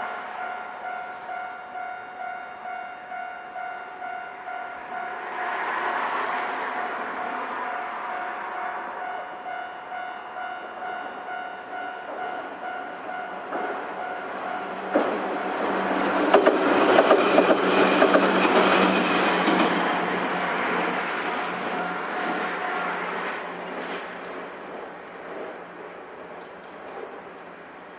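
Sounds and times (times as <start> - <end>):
train wheels clattering over rail joints: 14.8 - 20.2.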